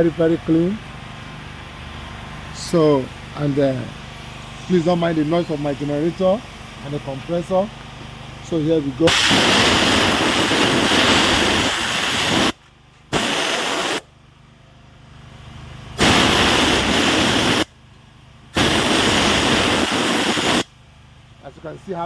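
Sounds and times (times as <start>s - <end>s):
air compressor humming: 0.0s - 22.0s
generator humming: 0.0s - 22.0s
pressure washer spraying water: 9.1s - 14.1s, 16.0s - 17.7s, 18.6s - 20.7s.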